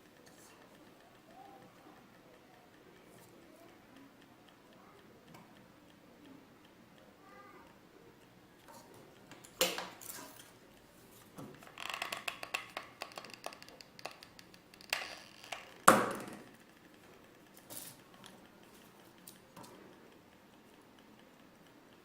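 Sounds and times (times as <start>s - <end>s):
wooden sticks clicking on table: 11.6s - 17.0s.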